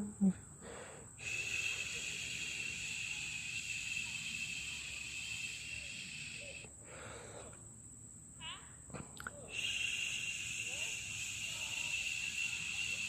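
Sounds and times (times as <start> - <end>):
high-pitched insect buzzing: 1.2 - 6.7, 9.5 - 13.0.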